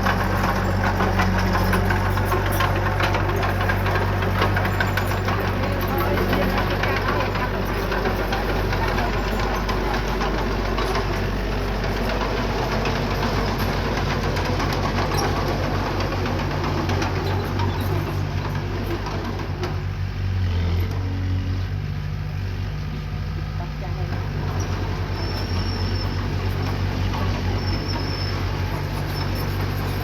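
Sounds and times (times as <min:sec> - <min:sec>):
rattling and clanking: 0:00.0 - 0:20.1
diesel engine running: 0:00.0 - 0:30.0.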